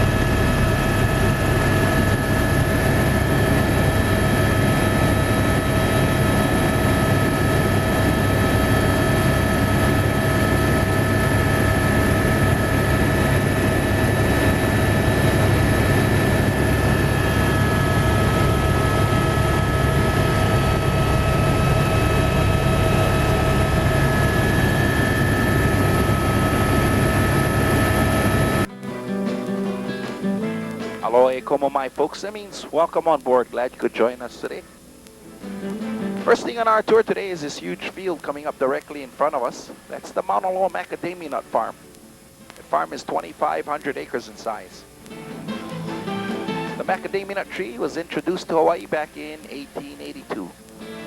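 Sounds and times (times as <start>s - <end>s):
helicopter engine and rotor drone: 0.0s - 28.7s
high whining tones: 0.0s - 51.0s.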